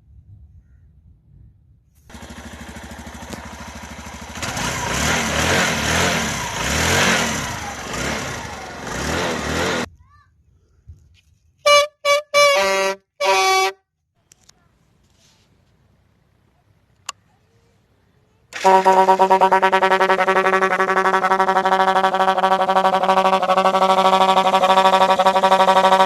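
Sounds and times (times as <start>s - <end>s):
motorcycle engine revving: 2.1s - 9.9s, 18.5s - 26.0s
short loud horn toots: 11.6s - 13.8s, 18.6s - 26.0s.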